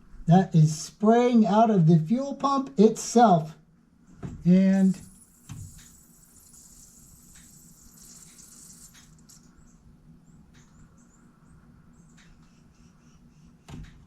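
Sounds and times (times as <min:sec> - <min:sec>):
faint high squeaks: 0:04.7 - 0:09.8.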